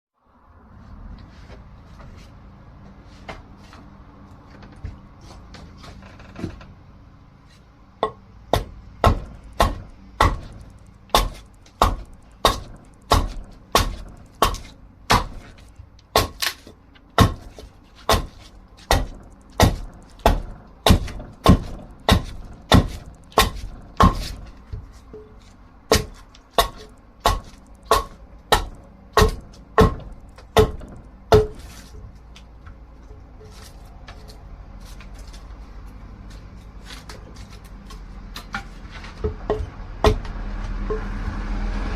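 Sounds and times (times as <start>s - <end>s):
axe chopping dry wood: 8.0s - 25.3s, 25.9s - 32.8s, 36.8s - 41.1s.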